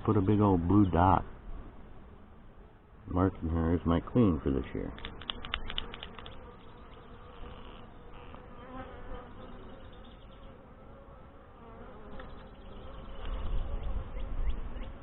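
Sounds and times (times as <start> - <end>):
honeybees buzzing: 0.0 - 15.0.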